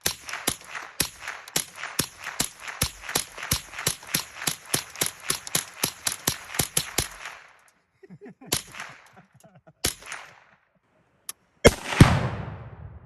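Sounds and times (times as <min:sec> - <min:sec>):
rifle shots: 0:00.0 - 0:07.7, 0:08.5 - 0:09.2, 0:09.8 - 0:10.6, 0:11.6 - 0:13.0
target explosion with low rumble: 0:11.8 - 0:13.0.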